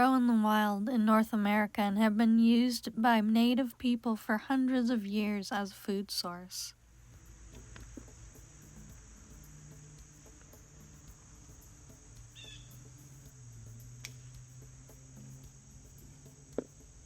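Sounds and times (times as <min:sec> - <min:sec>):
crickets chirping: 0:06.9 - 0:17.0.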